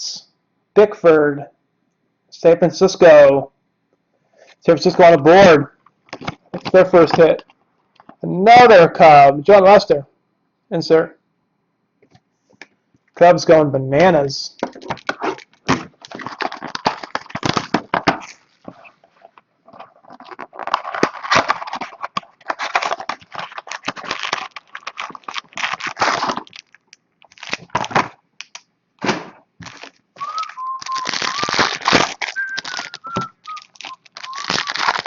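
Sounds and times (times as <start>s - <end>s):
cards being handled: 14.6s - 28.6s, 29.6s - 35.0s
wrappers torn and crinkled: 14.7s - 18.4s, 19.8s - 28.6s, 29.6s - 35.0s
thin whistle-like tones: 30.2s - 31.5s, 32.3s - 34.8s.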